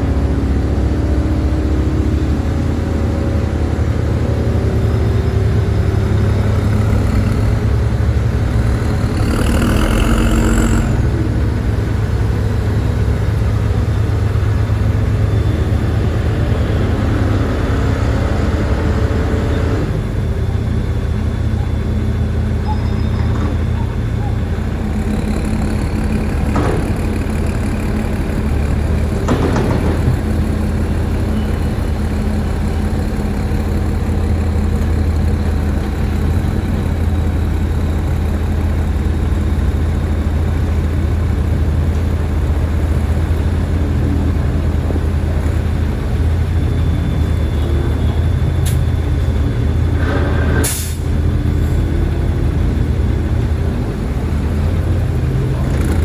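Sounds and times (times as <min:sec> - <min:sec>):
diesel engine droning: 0:00.0 - 0:56.0.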